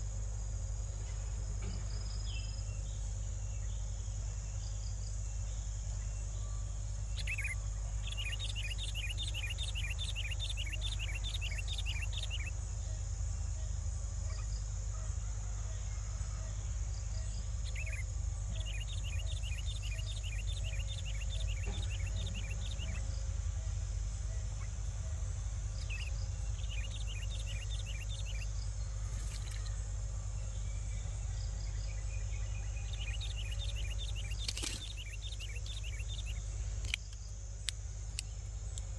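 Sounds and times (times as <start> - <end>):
low steady hum: 0.0 - 38.9
high-pitched insect drone: 0.8 - 14.8, 15.8 - 37.3
rapid chirping: 17.5 - 29.8.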